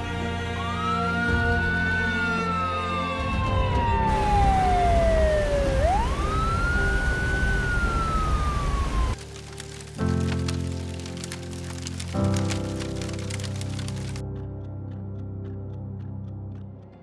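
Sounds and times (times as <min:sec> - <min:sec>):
emergency siren wailing: 0:00.6 - 0:09.2.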